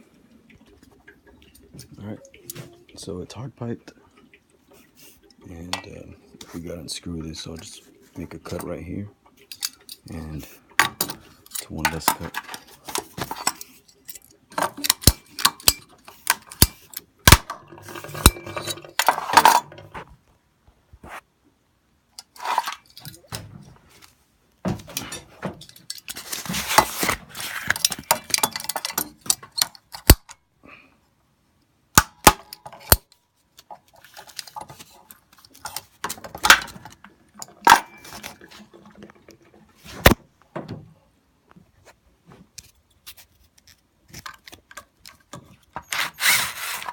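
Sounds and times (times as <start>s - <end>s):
metallic clinks and knocks: 10.8s - 20.0s, 35.4s - 38.5s
metal scraping: 17.5s - 20.0s, 45.7s - 46.9s.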